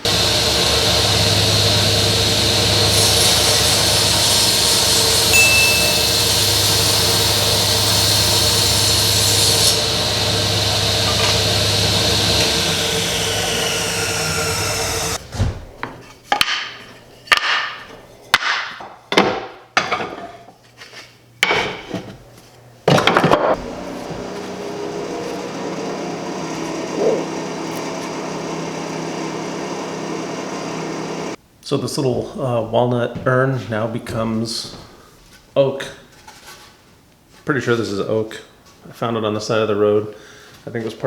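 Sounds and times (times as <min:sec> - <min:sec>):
table saw running: 0:00.0 - 0:15.2, 0:23.6 - 0:31.4.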